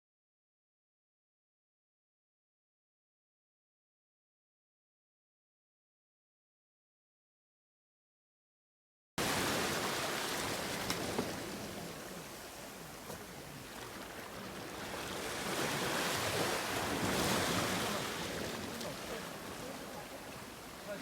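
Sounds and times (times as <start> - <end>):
waves washing onto shore: 9.2 - 21.0.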